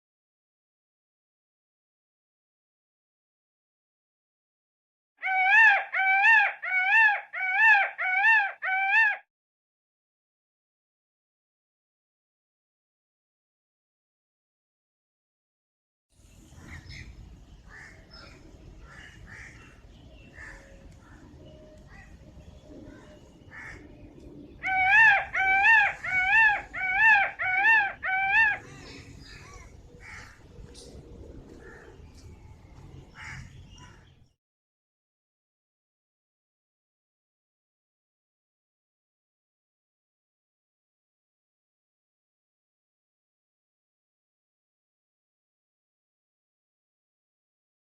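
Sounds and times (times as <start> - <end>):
peacock calling: 5.2 - 9.2, 17.7 - 30.9.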